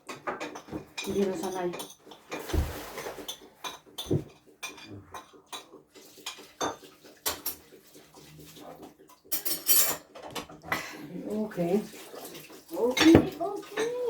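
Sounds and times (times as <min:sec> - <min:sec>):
cutlery clinking on plates: 0:00.0 - 0:07.8, 0:09.0 - 0:10.6, 0:12.9 - 0:14.0.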